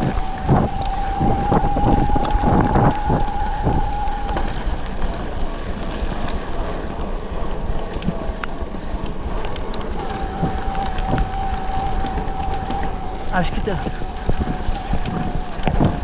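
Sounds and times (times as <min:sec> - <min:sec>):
electric motor whine: 0:00.0 - 0:05.3
bike clicks and rattles: 0:00.0 - 0:16.0
tyres rumbling over dirt: 0:00.0 - 0:16.0
wind buffeting microphone: 0:00.0 - 0:16.0.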